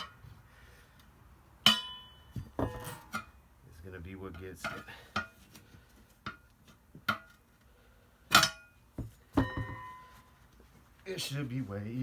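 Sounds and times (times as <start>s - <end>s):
tire irons clanking on wheel rim: 1.6s - 3.4s, 8.3s - 10.4s.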